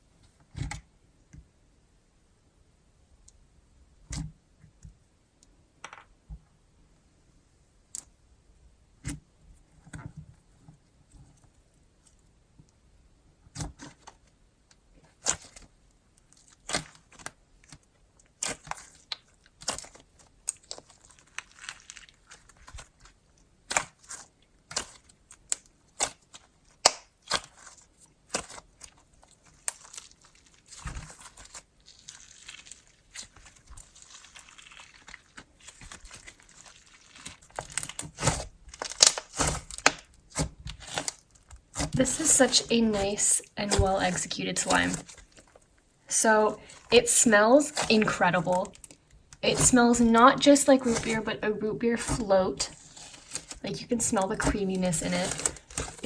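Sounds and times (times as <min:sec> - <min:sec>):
slime kneaded by hand: 0:15.0 - 0:56.0.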